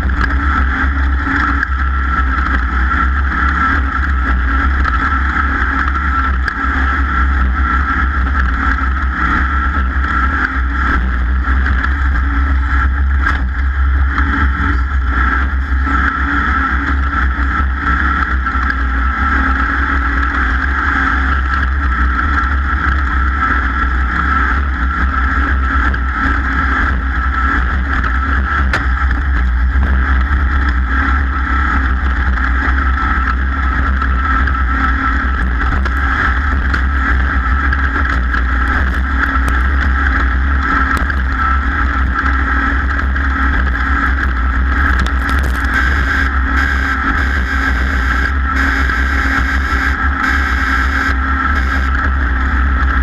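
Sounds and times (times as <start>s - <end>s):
engine running hard: 0.0s - 53.0s.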